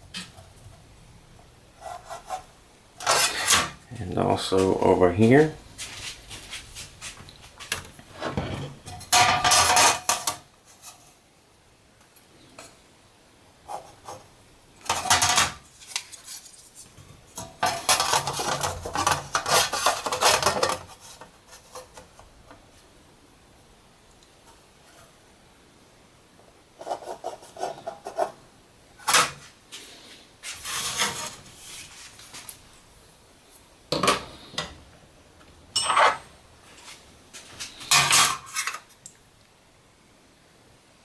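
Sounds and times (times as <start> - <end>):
metal clattering and scraping: 1.8 - 3.8, 6.8 - 11.0, 17.4 - 21.0, 30.4 - 32.2, 35.8 - 37.0, 37.6 - 38.9.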